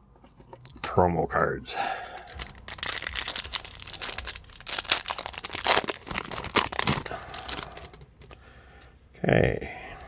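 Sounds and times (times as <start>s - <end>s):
foil wrapper tearing and crinkling: 2.3s - 8.0s.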